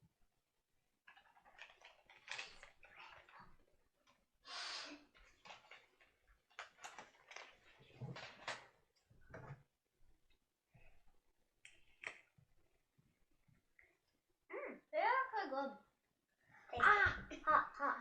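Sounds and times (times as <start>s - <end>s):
small objects clicking and knocking: 1.0s - 4.2s, 5.2s - 8.7s, 11.6s - 12.4s.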